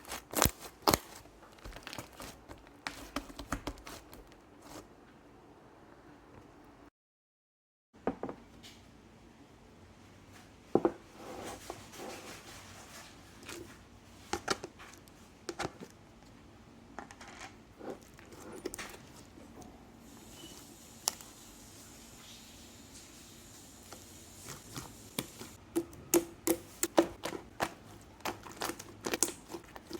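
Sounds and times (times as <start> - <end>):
slime squishing with pops: 0.0 - 4.1, 24.5 - 29.9.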